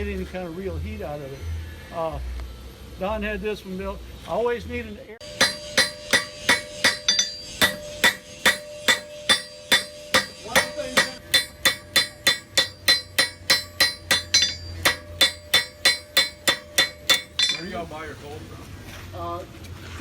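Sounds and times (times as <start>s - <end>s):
hammer striking an anvil: 5.2s - 17.9s.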